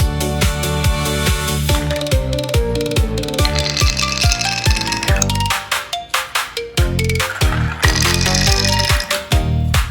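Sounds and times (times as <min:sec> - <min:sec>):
upbeat electronic music: 0:01.7 - 0:09.3.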